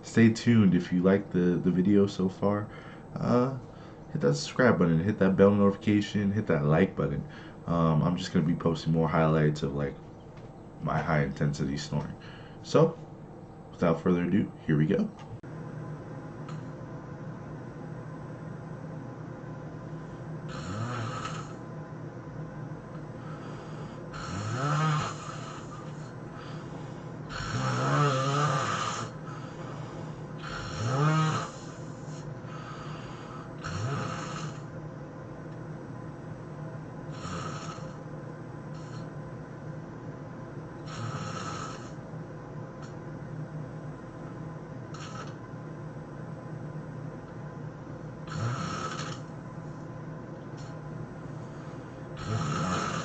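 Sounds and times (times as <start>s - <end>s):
person snoring heavily: 20.5s - 21.6s, 23.2s - 34.7s, 37.1s - 38.0s, 40.8s - 42.0s, 44.9s - 45.4s, 48.2s - 49.3s, 51.4s - 53.0s.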